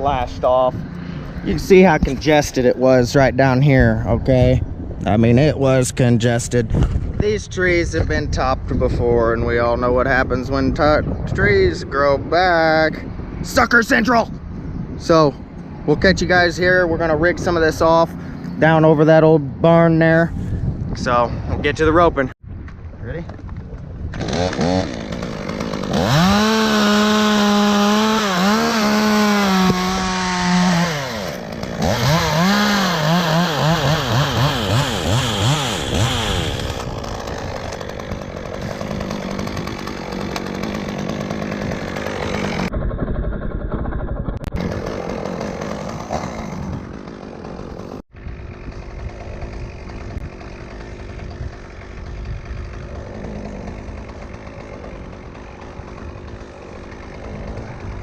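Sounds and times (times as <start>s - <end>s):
chainsaw cutting wood: 24.0s - 58.0s.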